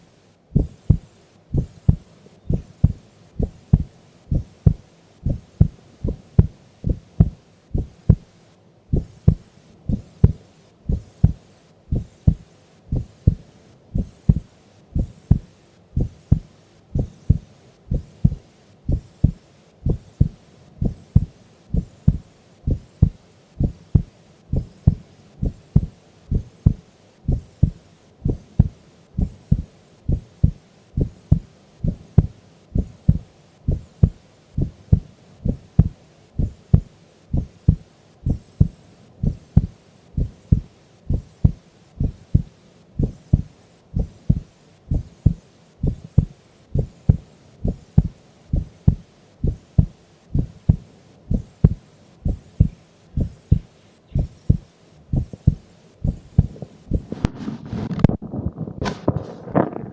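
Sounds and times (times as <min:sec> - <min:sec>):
heartbeat thumps: 0:00.6 - 0:08.3, 0:08.9 - 0:59.9.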